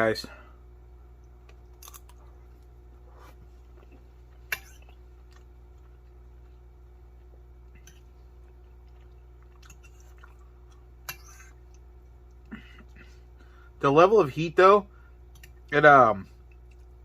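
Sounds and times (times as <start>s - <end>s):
person chewing noodles: 1.2s - 13.2s.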